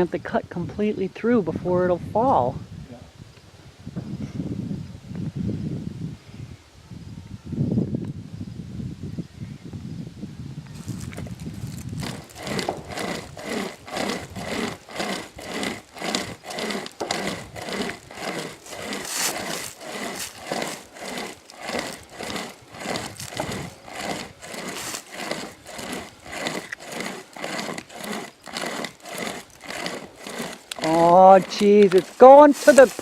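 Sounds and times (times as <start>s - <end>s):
hand chainsaw rasping through wood: 10.7s - 33.0s.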